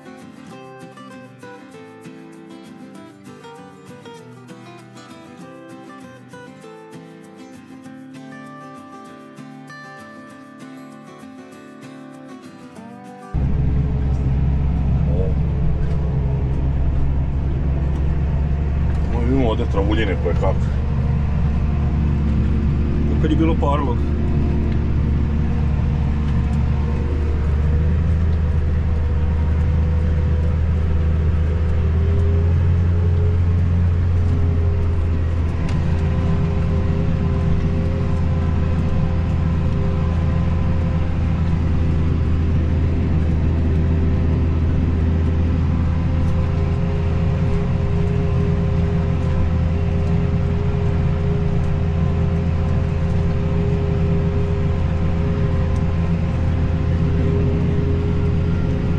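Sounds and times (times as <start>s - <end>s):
vehicle engine droning: 13.3s - 58.9s.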